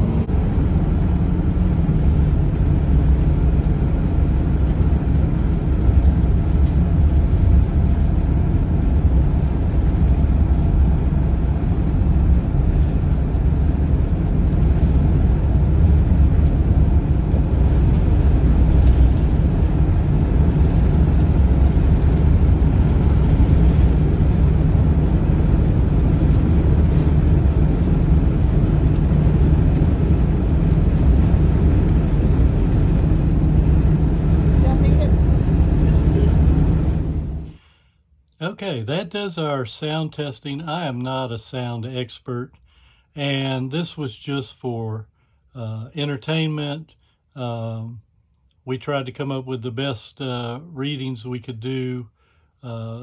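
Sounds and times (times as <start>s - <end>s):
engine and road rumble: 0.0s - 37.8s.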